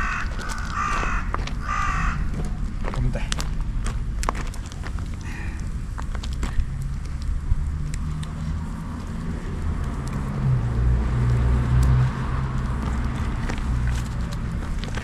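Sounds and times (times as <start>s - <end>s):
vehicle engine humming: 0.0s - 15.0s.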